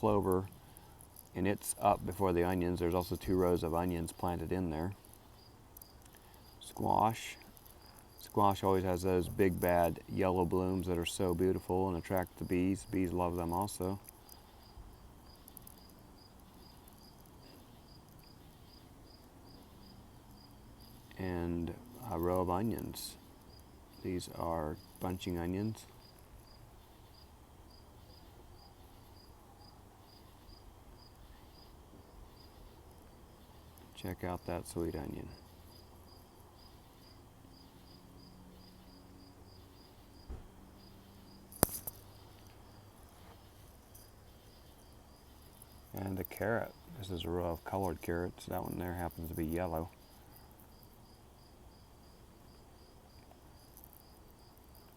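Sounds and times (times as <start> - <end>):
faint insect chirping: 0.0 - 54.9
low thump: 40.2 - 40.5.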